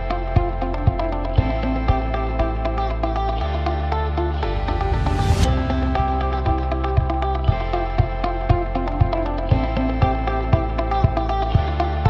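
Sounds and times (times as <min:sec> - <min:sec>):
electronic music with deep bass: 0:00.0 - 0:12.0
rising swoosh: 0:04.4 - 0:07.4.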